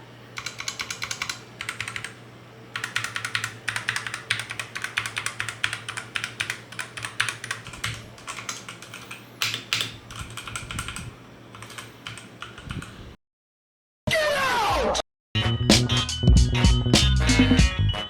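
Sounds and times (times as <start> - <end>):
mechanical keyboard typing: 0.4 - 2.2, 2.8 - 13.0.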